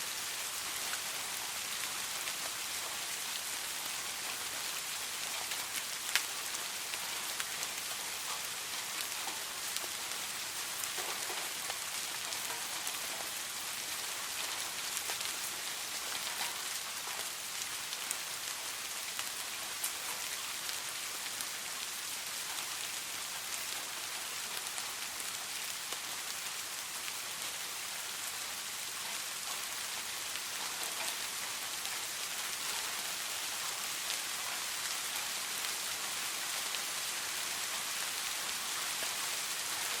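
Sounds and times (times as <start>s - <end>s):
soft rain falling: 0.0s - 40.0s.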